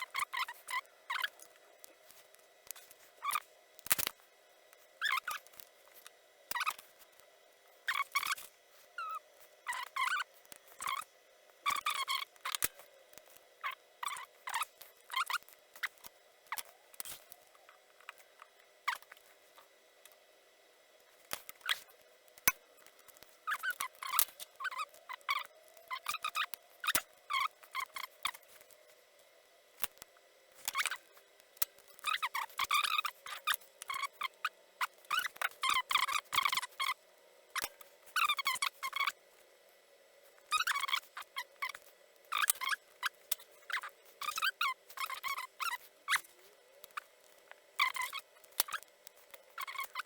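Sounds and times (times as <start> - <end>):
tools and components clicking: 29.8 - 31.0.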